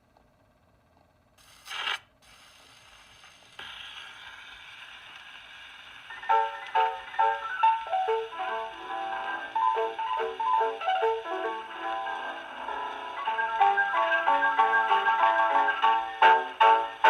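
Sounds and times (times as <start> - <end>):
record surface hiss: 0.0 - 17.0
needle scraping record: 1.5 - 17.0
piano duet on gramophone: 6.0 - 17.0.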